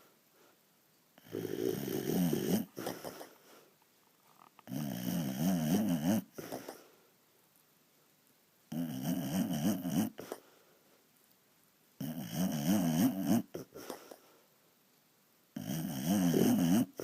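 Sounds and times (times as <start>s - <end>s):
pet snoring heavily: 1.2s - 3.4s, 4.6s - 6.8s, 8.7s - 10.4s, 12.0s - 14.1s, 15.6s - 17.0s.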